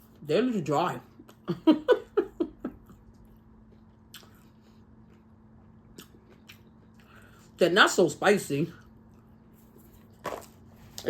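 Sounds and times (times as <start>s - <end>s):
person chewing food: 2.8s - 7.5s, 8.8s - 10.2s.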